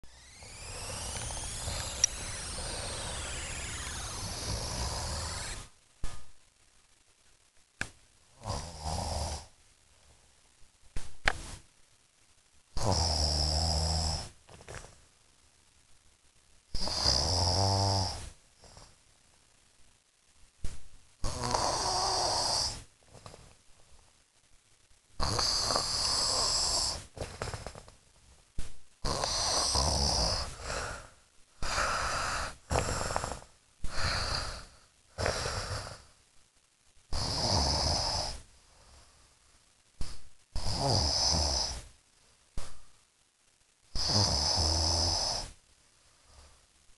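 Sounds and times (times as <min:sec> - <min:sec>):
person snoring: 0:00.3 - 0:05.7, 0:08.4 - 0:09.5, 0:12.8 - 0:14.4, 0:16.7 - 0:19.0, 0:21.2 - 0:22.9, 0:25.2 - 0:27.8, 0:29.0 - 0:36.1, 0:37.1 - 0:38.4, 0:40.0 - 0:41.9, 0:43.9 - 0:45.6.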